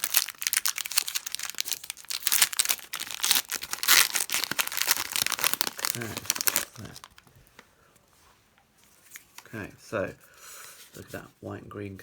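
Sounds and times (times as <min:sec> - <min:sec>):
foil wrapper ripping: 0:00.0 - 0:07.2
foil wrapper crinkling: 0:00.0 - 0:07.3.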